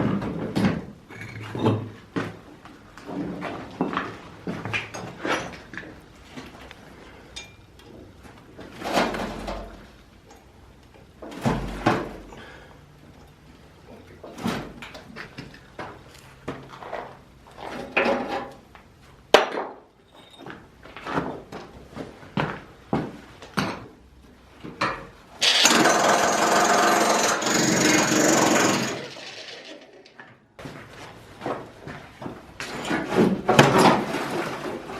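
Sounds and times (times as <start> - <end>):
power tool running loudly: 25.4 - 30.0.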